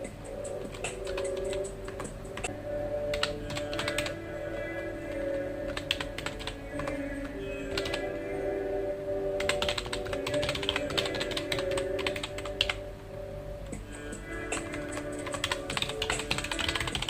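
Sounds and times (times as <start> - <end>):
soft background music: 0.0 - 17.0
computer keyboard typing: 0.4 - 2.5, 3.1 - 4.2, 5.1 - 8.1, 9.4 - 12.8, 14.5 - 17.0.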